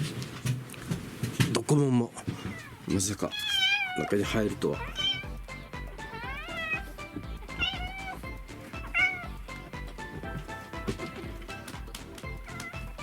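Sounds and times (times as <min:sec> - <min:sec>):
cat meowing: 0:02.3 - 0:05.4, 0:06.0 - 0:09.4
background music: 0:04.1 - 0:13.0.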